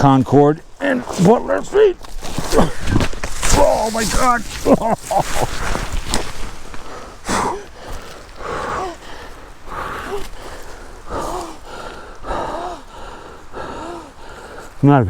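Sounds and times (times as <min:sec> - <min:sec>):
man gasping and groaning: 0:00.7 - 0:14.8.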